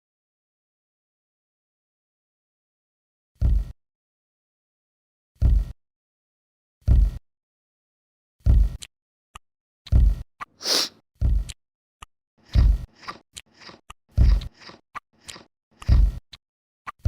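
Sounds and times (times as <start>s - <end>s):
short high hiss: 10.6s - 10.9s.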